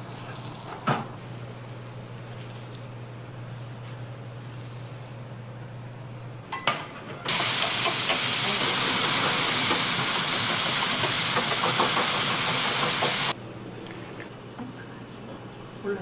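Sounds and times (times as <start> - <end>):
loud steady hiss: 7.3 - 13.4.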